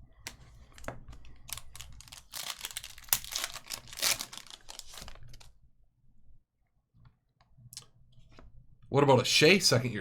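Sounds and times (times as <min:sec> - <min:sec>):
trading cards crinkling and rustling: 0:00.3 - 0:05.6.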